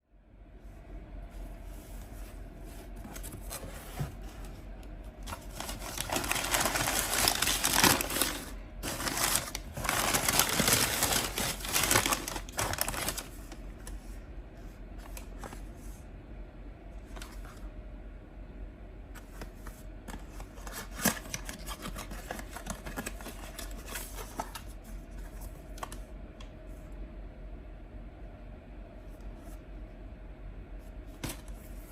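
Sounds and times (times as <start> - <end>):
packaging rustling and crinkling: 2.8 - 4.6, 5.2 - 14.0, 20.1 - 25.5.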